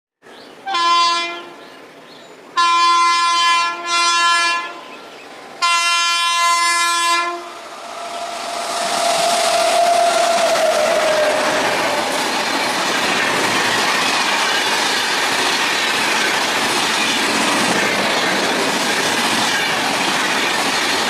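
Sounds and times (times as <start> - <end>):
locomotive horn blasts: 0.7 - 1.6, 2.6 - 4.9, 5.6 - 7.6
train clattering past on rails: 4.2 - 21.0.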